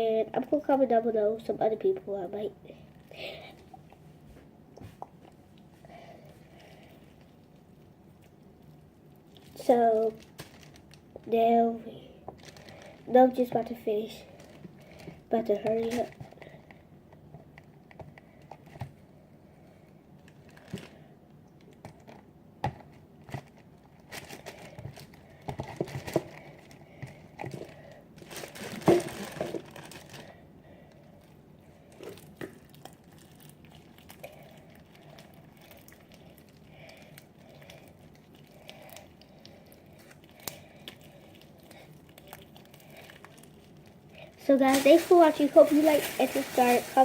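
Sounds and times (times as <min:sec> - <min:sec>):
slime crinkling and rustling: 0:04.5 - 0:19.1, 0:20.1 - 0:47.0.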